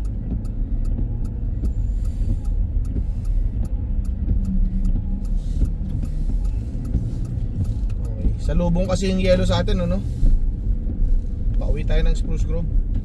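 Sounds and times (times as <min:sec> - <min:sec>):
car road and engine rumble: 0:00.0 - 0:13.0
rapid faint ticks: 0:00.0 - 0:13.0.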